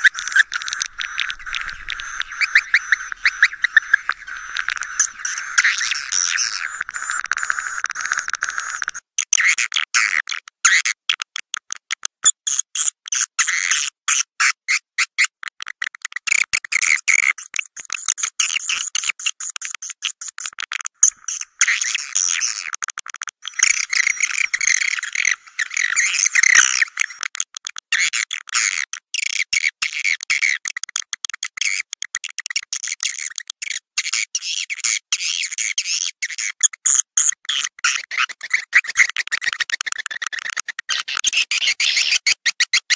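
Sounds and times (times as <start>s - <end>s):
swiftlet chittering calls: 0.0s - 9.0s, 23.4s - 27.2s.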